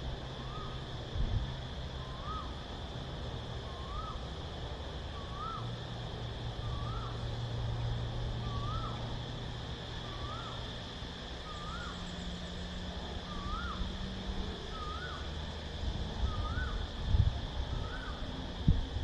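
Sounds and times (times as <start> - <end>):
cicadas droning: 0.0 - 19.0
bird whistled call: 0.4 - 0.8, 2.0 - 2.6, 3.7 - 4.2, 5.2 - 5.7, 6.6 - 7.2, 8.4 - 9.0, 11.4 - 12.4, 13.3 - 13.9, 14.7 - 15.3, 16.2 - 17.0, 17.8 - 18.2.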